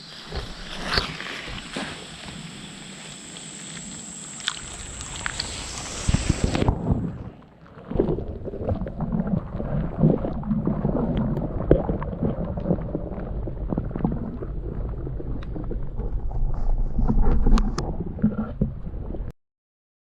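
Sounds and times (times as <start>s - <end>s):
creek water rushing: 0.0s - 7.3s
wind buffeting the microphone: 4.6s - 7.4s.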